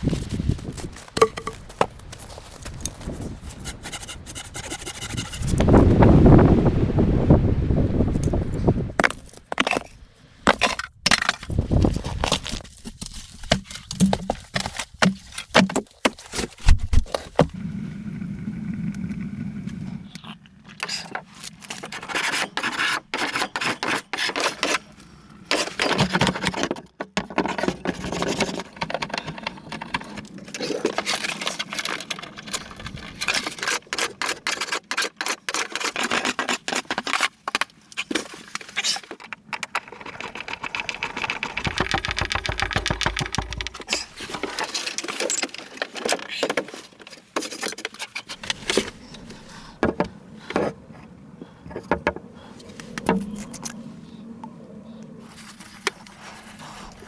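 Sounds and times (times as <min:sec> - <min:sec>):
objects clicking and knocking: 0:01.1 - 0:03.0, 0:09.0 - 0:17.5, 0:25.5 - 0:50.7.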